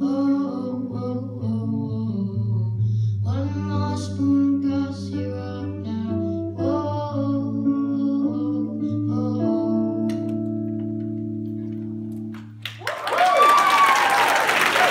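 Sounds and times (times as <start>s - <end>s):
person singing: 0.0s - 10.6s
guitar: 0.0s - 12.8s
audience applause: 12.6s - 14.9s.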